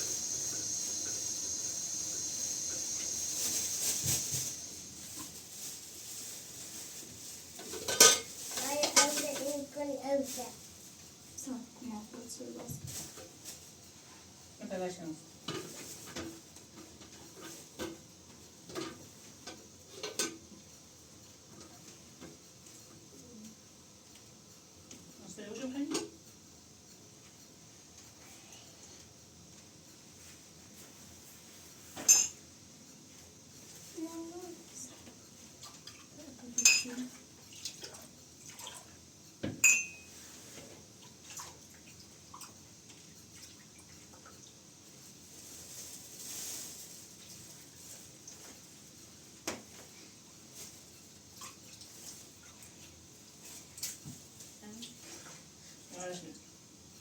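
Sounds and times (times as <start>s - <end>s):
kitchenware clinking and knocking: 32.0s - 32.4s, 39.5s - 40.0s
sharp ringing clink: 39.6s - 40.1s.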